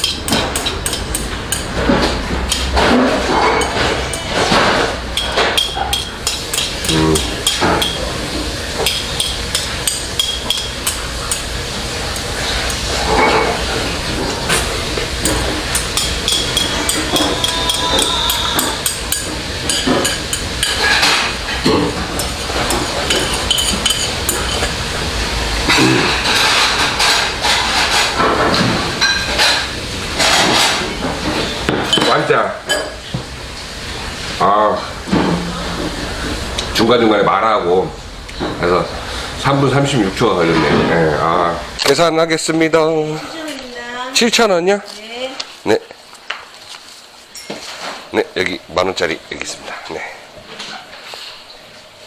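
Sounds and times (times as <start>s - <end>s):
utensils clicking against a dish: 0.0s - 8.0s, 8.8s - 11.5s, 14.5s - 24.7s.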